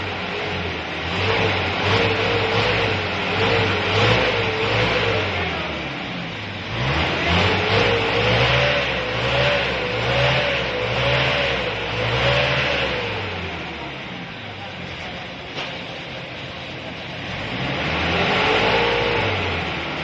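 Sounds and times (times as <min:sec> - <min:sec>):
diesel engine revving high: 0:00.0 - 0:20.0.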